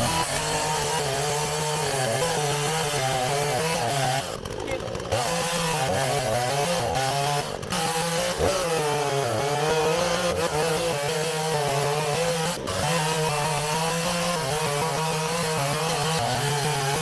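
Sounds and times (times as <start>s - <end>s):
chainsaw cutting wood: 0.0s - 17.0s.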